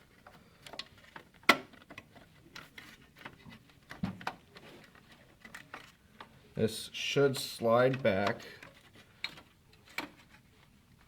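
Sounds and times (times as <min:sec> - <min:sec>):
plastic clicks and rattles: 0:00.1 - 0:06.3, 0:07.9 - 0:10.5.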